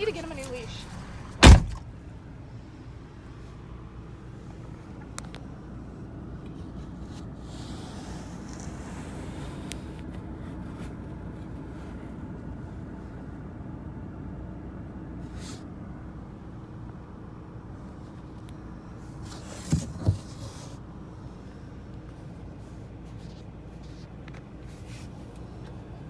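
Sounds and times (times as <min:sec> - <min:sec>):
car engine idling: 0:00.1 - 0:03.2
short low thumps: 0:01.4 - 0:02.0.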